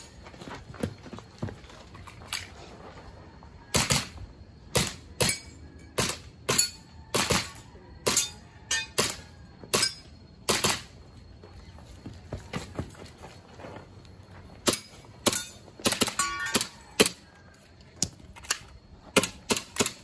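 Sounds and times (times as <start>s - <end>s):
pistol shots: 3.7s - 8.3s, 8.9s - 10.9s.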